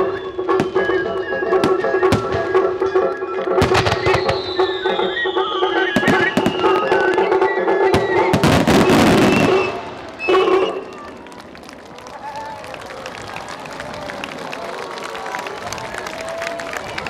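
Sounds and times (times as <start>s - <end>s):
music: 0.0s - 11.0s
fireworks bursting: 0.0s - 12.1s
fireworks crackling: 0.0s - 17.0s.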